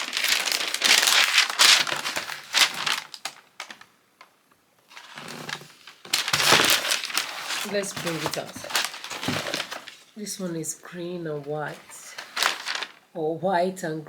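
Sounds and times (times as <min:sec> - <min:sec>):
paper packing crinkling: 0:00.0 - 0:04.3, 0:04.9 - 0:13.1.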